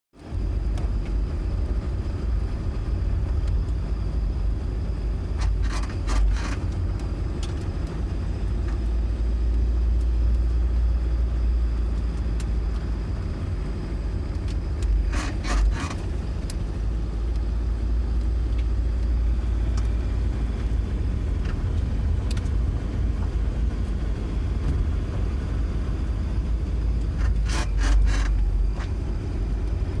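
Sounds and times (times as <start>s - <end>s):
van engine and road rumble: 0.1s - 30.0s
rapid squeaking: 5.4s - 7.9s, 14.6s - 16.7s, 26.9s - 29.2s.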